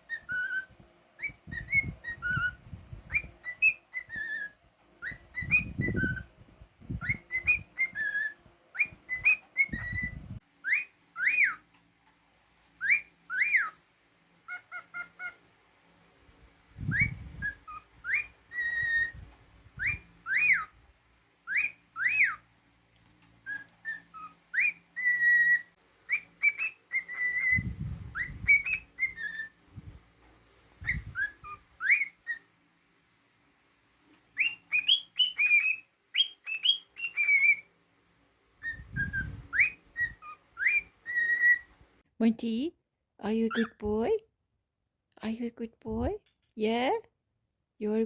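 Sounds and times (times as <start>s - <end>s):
cockatiel whistling a tune: 0.0s - 6.3s, 6.9s - 11.6s, 12.8s - 13.8s, 14.5s - 15.4s, 16.8s - 20.8s, 21.4s - 22.4s, 23.4s - 30.0s, 30.8s - 32.5s, 34.3s - 37.7s, 38.6s - 41.8s.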